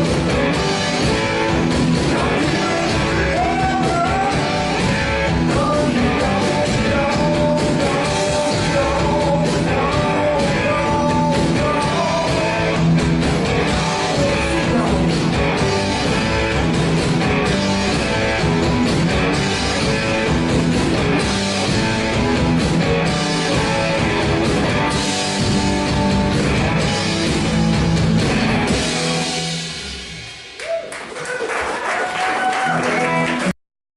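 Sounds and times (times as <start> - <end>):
electric guitar strumming: 0.0 - 30.6
live rock band playing: 0.0 - 30.6
person singing: 2.1 - 12.9, 13.5 - 16.0.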